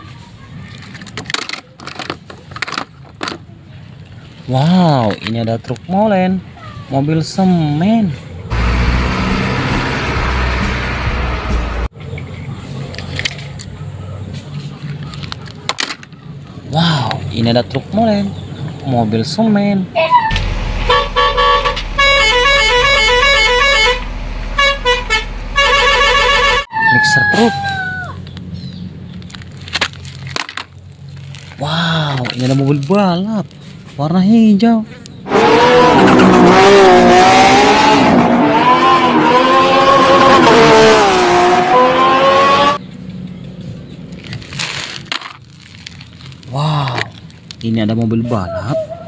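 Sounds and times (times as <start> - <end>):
low engine rumble: 8.3 - 15.2, 20.3 - 26.7
race car engine revving: 8.5 - 11.9, 20.3 - 26.7, 35.3 - 42.8
multi-tone vehicle horn tune: 20.3 - 26.7.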